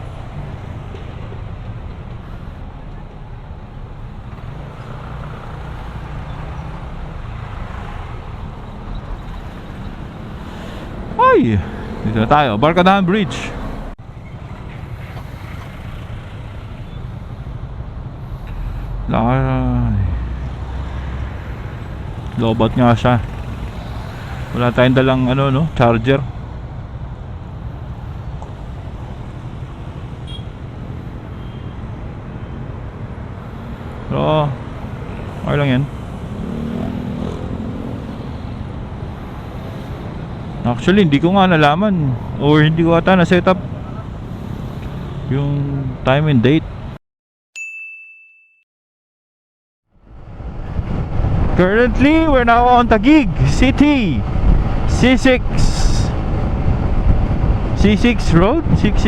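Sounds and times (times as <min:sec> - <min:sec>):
road and traffic noise: 0:00.0 - 0:47.0, 0:49.9 - 0:59.0
wind rumble: 0:49.9 - 0:59.0.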